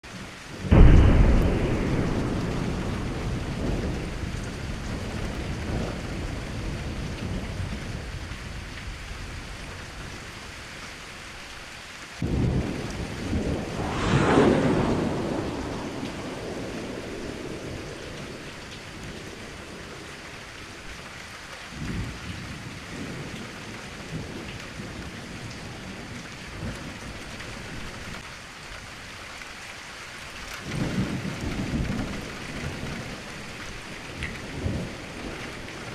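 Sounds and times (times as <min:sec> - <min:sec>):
heavy rain falling: 0:00.1 - 0:12.8, 0:15.5 - 0:35.9
thunder rumbling: 0:00.7 - 0:06.3, 0:12.2 - 0:20.0.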